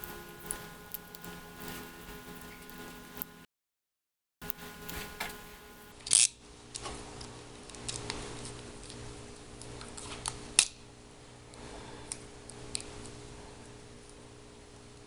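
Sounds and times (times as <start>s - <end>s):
tape clicks and crinkles: 0.0s - 3.4s, 4.4s - 5.9s.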